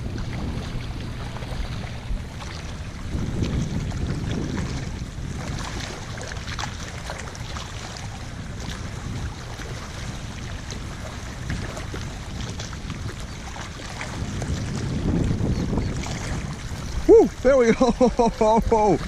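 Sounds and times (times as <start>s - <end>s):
faint ticks and splashes: 0.0s - 14.9s
wind buffeting microphone: 0.0s - 19.0s.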